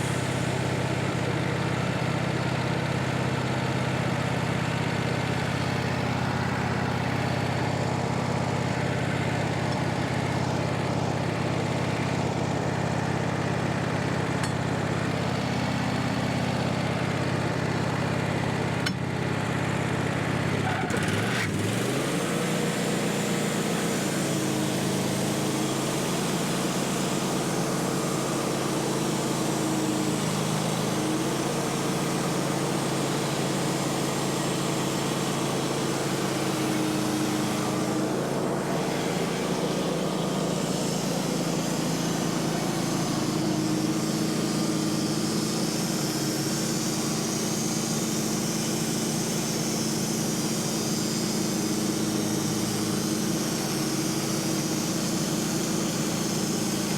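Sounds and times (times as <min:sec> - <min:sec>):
sawmill engine running: 0:00.0 - 0:56.9
saw cutting log: 0:20.6 - 0:56.9.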